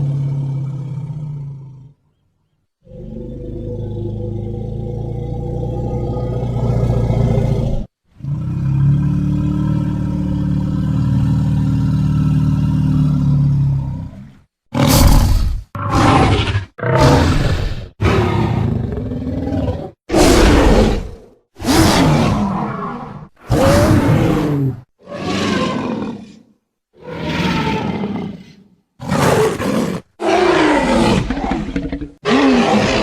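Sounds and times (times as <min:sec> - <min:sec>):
monster growling roar: 0:14.8 - 0:26.4, 0:27.0 - 0:33.0.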